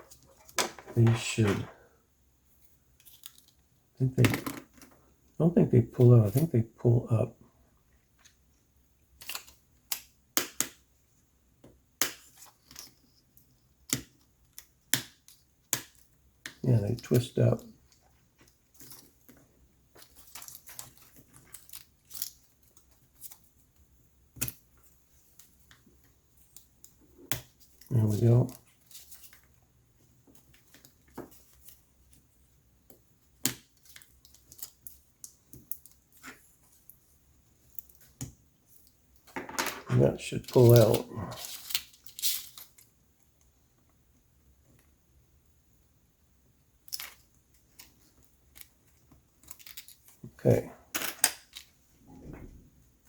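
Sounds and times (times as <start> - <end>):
small parts clicking and tapping: 32.8 - 37.0, 37.6 - 43.9, 46.8 - 50.3.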